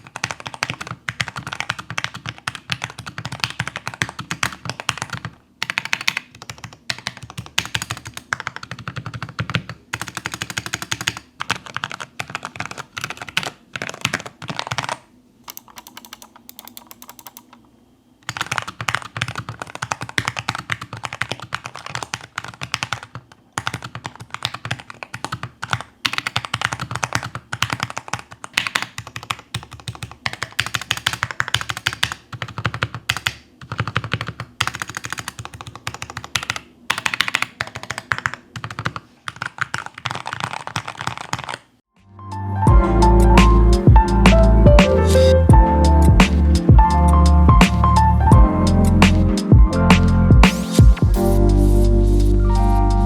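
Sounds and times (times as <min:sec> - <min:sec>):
mechanical keyboard key clacks: 0:00.2 - 0:17.6.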